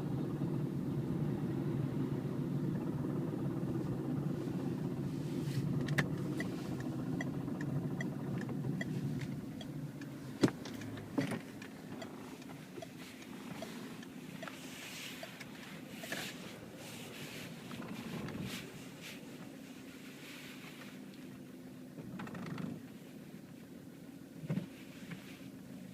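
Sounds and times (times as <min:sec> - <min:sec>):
diesel car engine running: 0:00.0 - 0:25.9
light regular ticking: 0:05.8 - 0:16.3.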